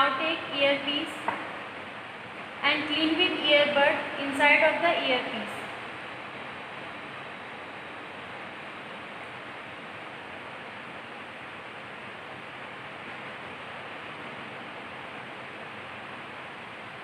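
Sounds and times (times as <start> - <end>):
steady background hiss: 0.0 - 17.0.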